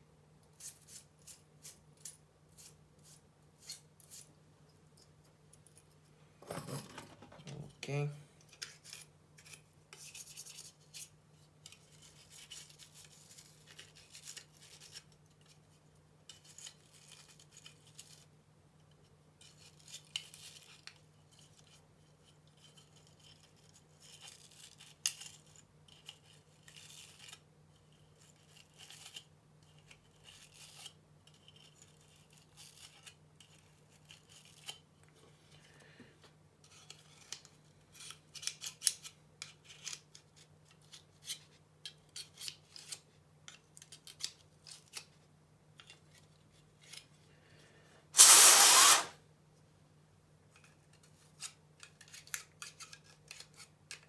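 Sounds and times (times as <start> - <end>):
low electrical hum: 0.0 - 17.5
tools scratching on plastic and metal: 48.2 - 49.1.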